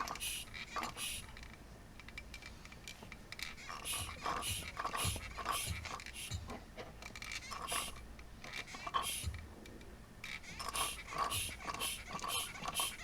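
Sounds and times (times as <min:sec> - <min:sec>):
hand vacuum pump hissing: 0:00.2 - 0:01.3, 0:03.7 - 0:06.6, 0:07.6 - 0:08.0, 0:08.8 - 0:09.4, 0:10.5 - 0:13.0.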